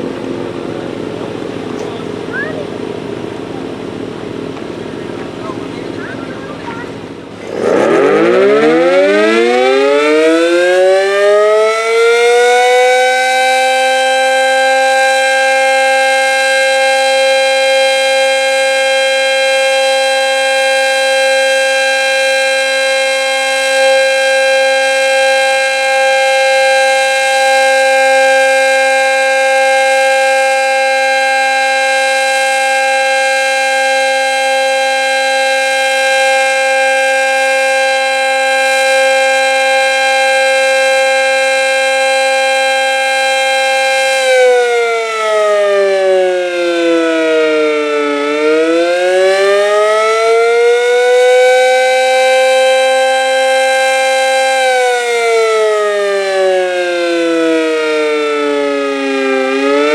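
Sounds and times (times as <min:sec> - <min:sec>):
siren winding up: 0:07.4 - 0:13.8.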